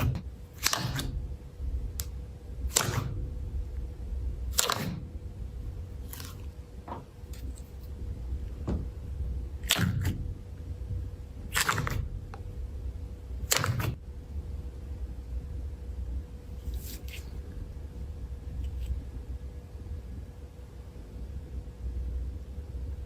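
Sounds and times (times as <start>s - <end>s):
slime squishing and popping: 9.6s - 10.2s, 11.5s - 12.1s.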